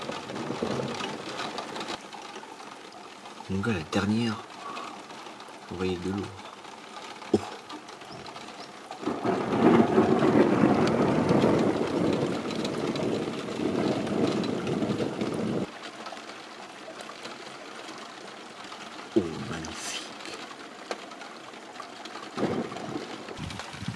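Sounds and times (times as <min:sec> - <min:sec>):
rain hiss: 0:00.0 - 0:23.9
rolling thunder: 0:09.0 - 0:15.7, 0:22.4 - 0:23.9.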